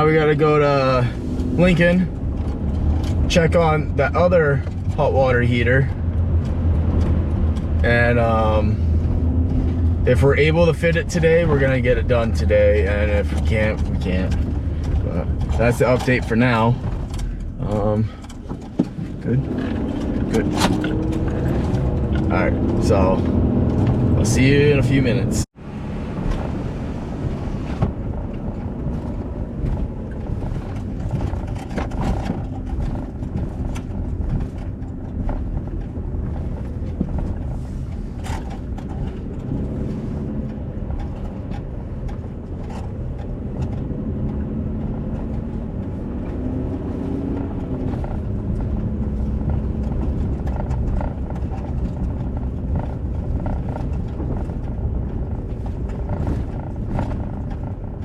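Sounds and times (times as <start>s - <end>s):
vehicle engine and road rumble: 0.0s - 58.0s
small rattles and clicks: 11.6s - 23.0s, 28.1s - 58.0s.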